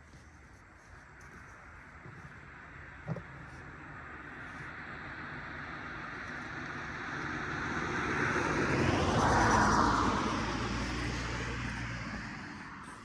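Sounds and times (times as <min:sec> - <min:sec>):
vehicle passing by: 0:04.6 - 0:13.0.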